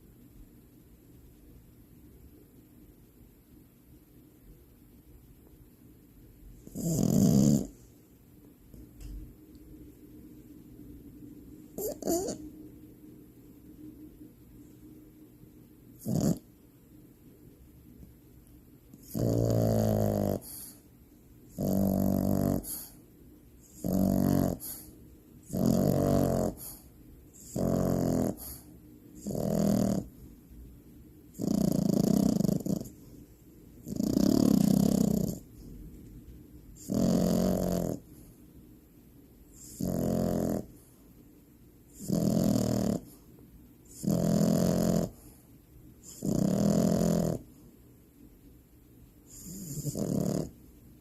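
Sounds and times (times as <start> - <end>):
puppy snoring: 6.6 - 7.9, 11.7 - 12.5, 16.0 - 16.6, 18.9 - 20.9, 21.5 - 23.0, 23.6 - 30.2, 31.3 - 33.2, 33.8 - 35.6, 36.7 - 38.3, 39.5 - 41.0, 41.9 - 45.4, 46.0 - 47.6, 49.2 - 50.6.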